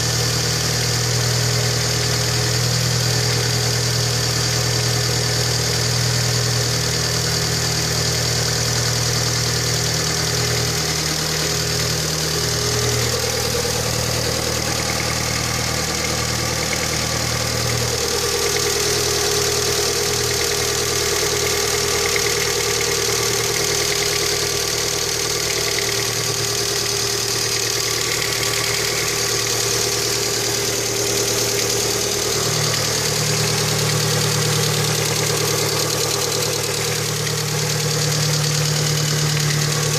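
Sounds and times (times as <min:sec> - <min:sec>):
car engine idling: 0:00.0 - 0:39.9
engine knocking: 0:00.0 - 0:39.9.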